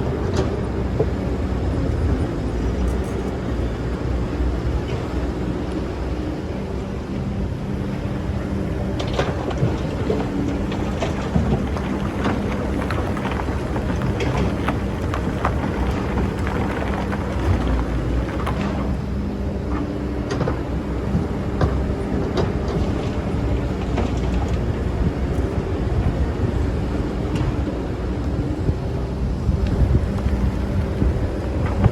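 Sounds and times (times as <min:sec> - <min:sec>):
excavator engine running: 0:00.0 - 0:31.9
bucket clicking and knocking in sand: 0:09.0 - 0:19.1.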